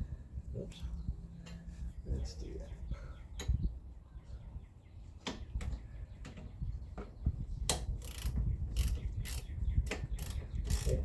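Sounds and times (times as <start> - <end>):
ratchet clicking: 7.7 - 11.0.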